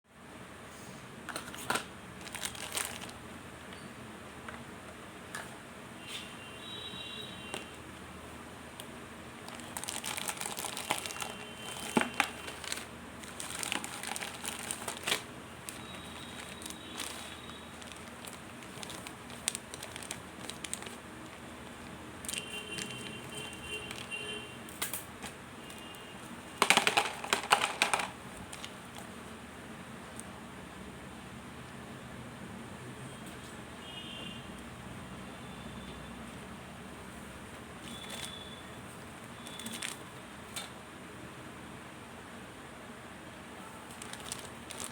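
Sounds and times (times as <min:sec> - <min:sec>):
packaging crinkling: 0:01.4 - 0:03.2, 0:09.4 - 0:26.0, 0:26.6 - 0:29.1, 0:37.8 - 0:38.4, 0:39.3 - 0:40.7, 0:43.9 - 0:44.9.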